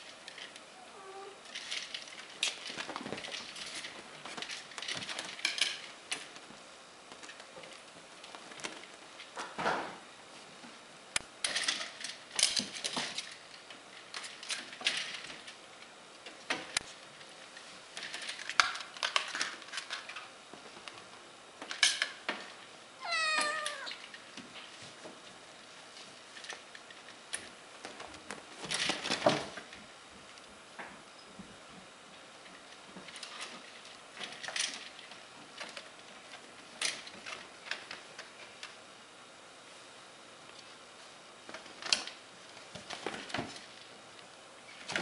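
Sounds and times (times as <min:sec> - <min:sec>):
kittens scuffling and tapping: 0:01.4 - 0:10.8, 0:11.4 - 0:38.8, 0:40.5 - 0:44.0
kitten meowing: 0:23.0 - 0:24.0.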